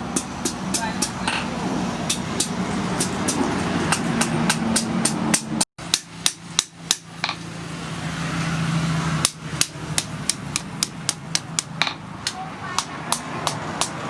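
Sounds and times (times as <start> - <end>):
hammer striking steel on anvil: 0.0 - 7.5, 9.2 - 14.0.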